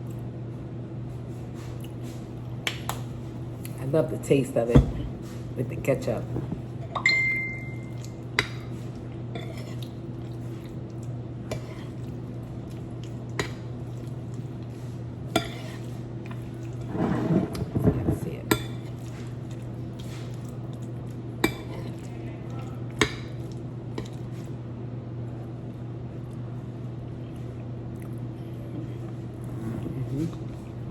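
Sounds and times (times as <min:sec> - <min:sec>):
steady low hum: 0:00.0 - 0:30.9
scraping on plate: 0:09.4 - 0:09.9, 0:11.5 - 0:12.0, 0:15.4 - 0:16.0, 0:16.7 - 0:19.3.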